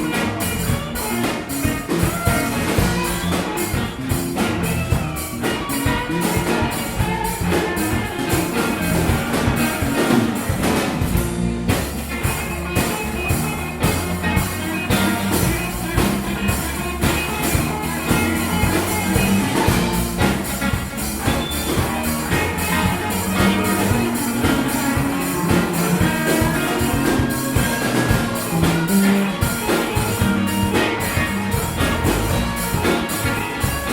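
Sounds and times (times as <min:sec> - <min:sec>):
bass line: 0:00.0 - 0:33.9
drum kit beat: 0:00.0 - 0:33.9
live band playing instrumental music: 0:00.0 - 0:33.9.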